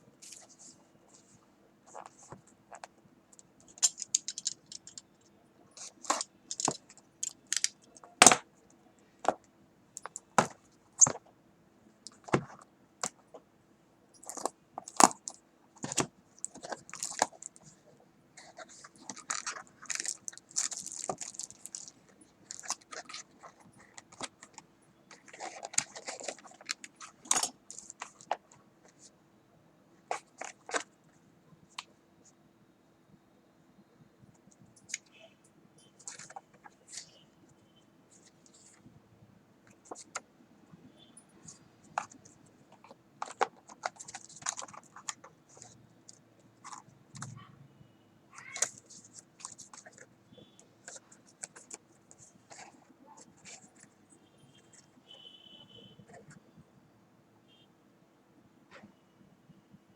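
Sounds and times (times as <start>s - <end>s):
faint steady hum: 0.0s - 59.9s
cardboard and plastic rustling: 0.2s - 8.5s, 10.0s - 11.3s, 12.1s - 13.4s, 14.3s - 29.1s, 30.1s - 31.0s, 36.0s - 37.2s, 39.7s - 40.3s, 41.4s - 47.4s, 48.4s - 54.1s
packaging clicks and knocks: 2.0s - 5.1s, 5.8s - 8.5s, 9.2s - 11.2s, 14.3s - 17.7s, 18.4s - 28.4s, 42.0s - 45.8s.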